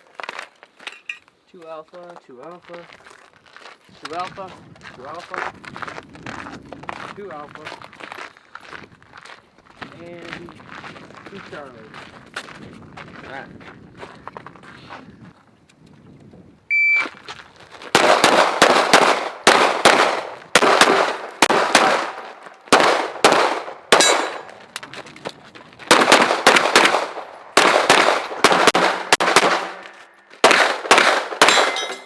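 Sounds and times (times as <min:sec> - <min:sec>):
shot timer beep: 0:16.7 - 0:17.1
pistol double shots: 0:17.9 - 0:24.6, 0:25.9 - 0:32.0.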